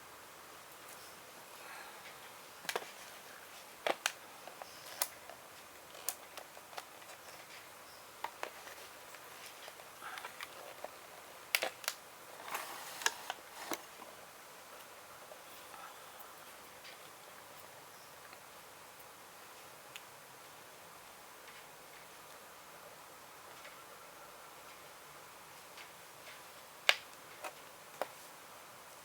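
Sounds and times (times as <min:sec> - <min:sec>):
soft rustles: 0:08.4 - 0:11.3, 0:12.3 - 0:14.2.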